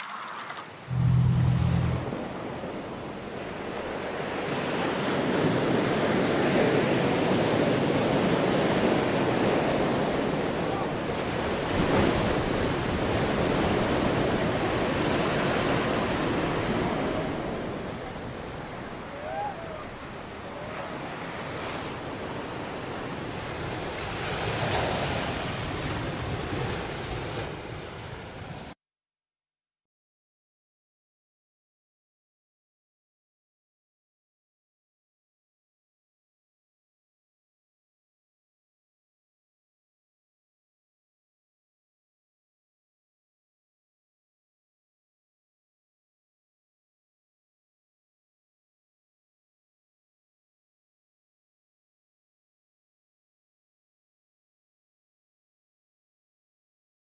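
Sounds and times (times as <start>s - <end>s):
waves breaking on shore: 0.0s - 28.8s.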